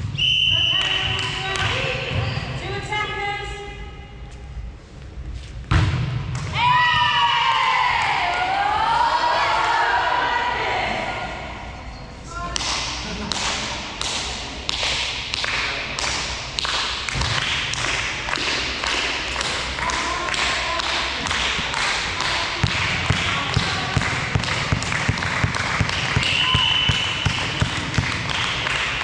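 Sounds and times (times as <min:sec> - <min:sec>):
rhythmic hand clapping: 0:12.6 - 0:29.0.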